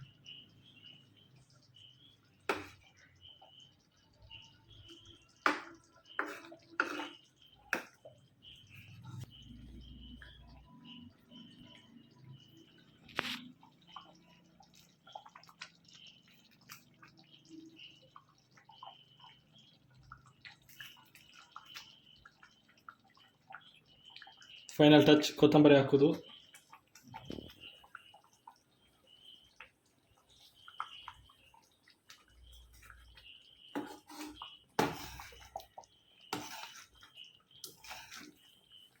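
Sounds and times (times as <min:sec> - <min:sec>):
gravy bubbling in a pan: 0:00.0 - 0:39.0
gravy bubbles popping: 0:26.0 - 0:33.7.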